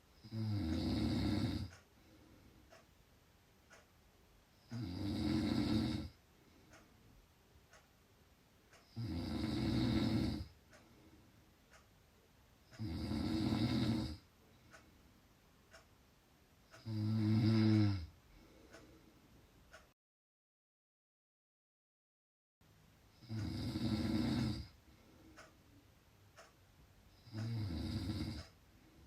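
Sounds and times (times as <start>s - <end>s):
person snoring: 0.2s - 1.7s, 4.6s - 6.2s, 8.8s - 10.5s, 12.8s - 14.2s, 16.8s - 18.1s, 23.1s - 24.8s, 27.2s - 28.5s.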